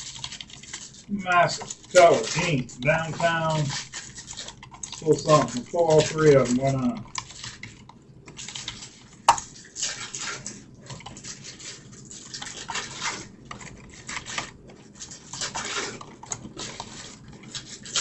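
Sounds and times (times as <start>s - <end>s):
card packs rustling and crinkling: 0.0s - 18.0s.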